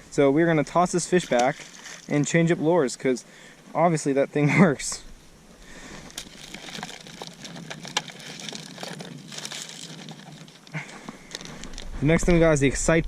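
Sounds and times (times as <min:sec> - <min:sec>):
fishing tackle crinkling and rustling: 0:00.6 - 0:02.8, 0:05.6 - 0:12.8.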